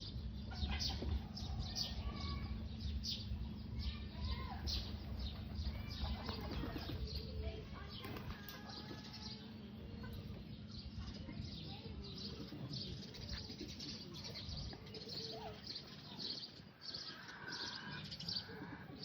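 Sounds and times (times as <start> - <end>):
birds chirping: 0.0 - 19.0.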